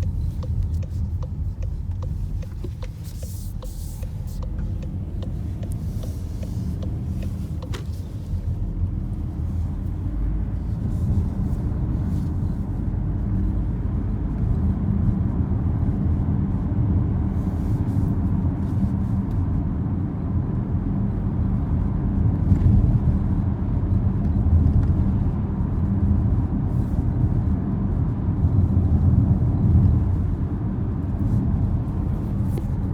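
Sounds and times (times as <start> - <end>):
dashboard ticks and creaks: 0.0 - 8.1
road and engine rumble in car: 0.0 - 32.9.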